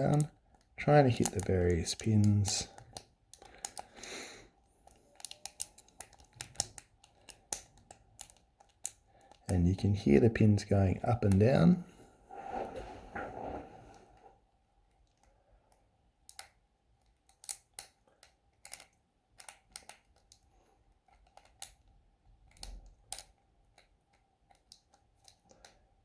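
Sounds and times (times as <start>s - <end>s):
lock pick clicking in padlock: 4.8s - 9.5s, 17.2s - 20.4s.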